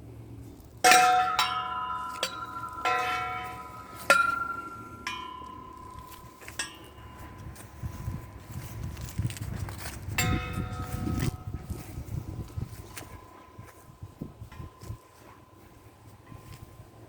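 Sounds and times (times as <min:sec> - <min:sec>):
tubular wind chime ringing: 0:00.8 - 0:08.3, 0:10.2 - 0:15.1.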